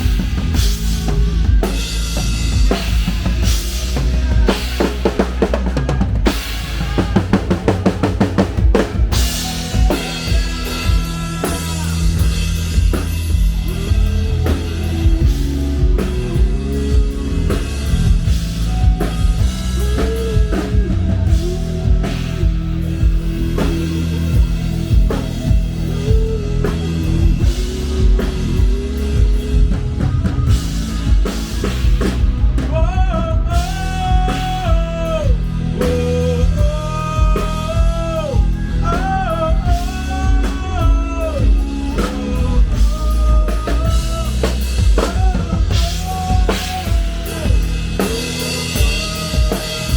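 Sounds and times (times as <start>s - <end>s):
rock band playing live: 0.0s - 49.9s.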